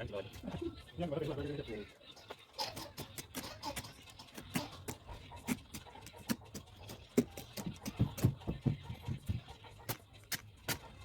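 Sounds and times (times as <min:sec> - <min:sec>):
sharp taps and knocks: 0:06.3 - 0:10.8.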